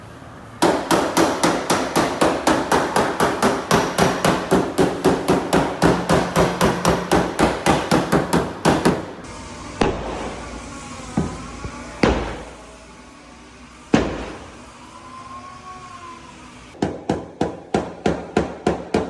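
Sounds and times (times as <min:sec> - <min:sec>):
hammer beating sheet metal: 0:00.6 - 0:09.2, 0:11.2 - 0:12.6, 0:13.9 - 0:14.6, 0:16.8 - 0:19.0.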